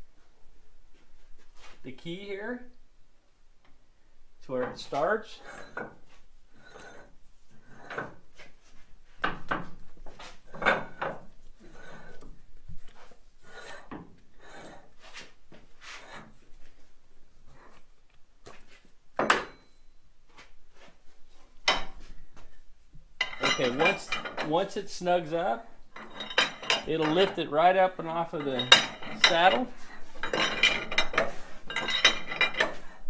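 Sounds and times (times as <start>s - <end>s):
metal scraping and clunking: 4.6s - 16.8s, 23.2s - 33.0s.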